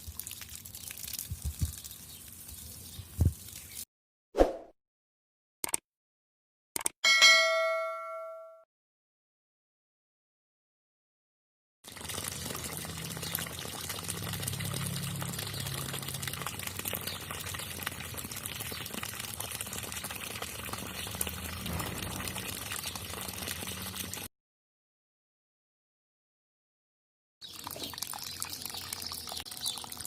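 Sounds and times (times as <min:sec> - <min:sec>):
water splashing and bubbling: 0:00.0 - 0:01.8, 0:11.8 - 0:24.3, 0:27.4 - 0:30.0.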